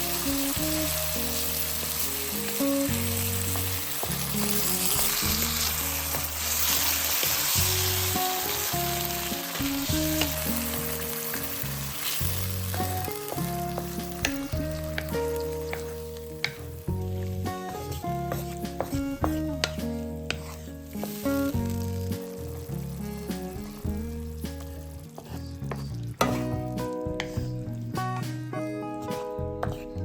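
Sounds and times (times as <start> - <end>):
food sizzling in a pan: 0.0 - 27.5
calm instrumental music: 0.0 - 30.0.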